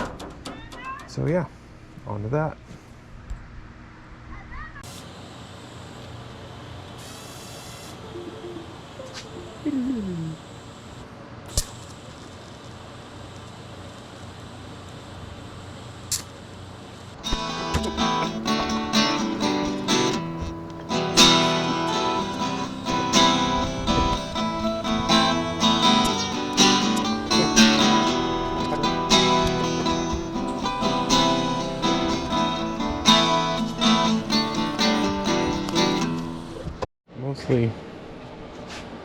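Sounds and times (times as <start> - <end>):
acoustic guitar music: 17.2 - 36.8.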